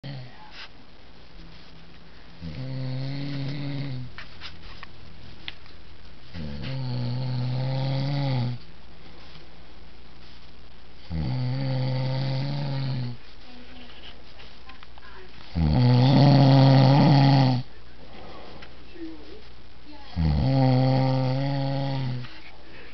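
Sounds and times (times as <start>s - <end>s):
man snoring: 2.4s - 4.1s, 6.4s - 8.6s, 11.0s - 13.2s, 15.6s - 17.7s, 20.2s - 22.2s.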